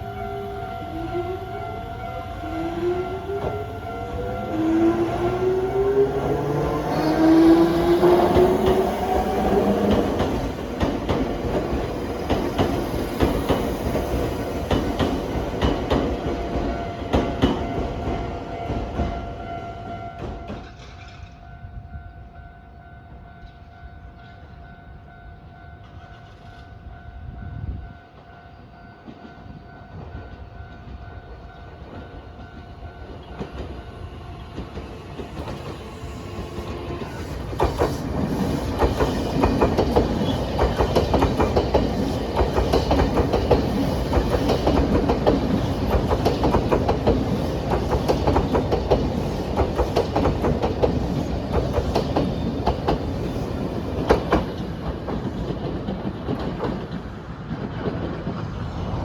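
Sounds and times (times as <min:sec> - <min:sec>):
electric train rumbling past: 0:00.0 - 0:59.0
wheels clacking over rail joints: 0:04.3 - 0:19.2, 0:31.8 - 0:59.0.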